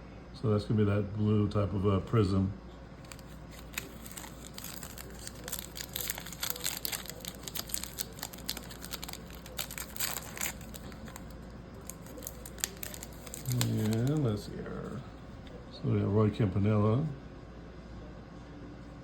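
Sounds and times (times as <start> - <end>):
plastic wrapper crinkling and tearing: 3.0 - 14.5.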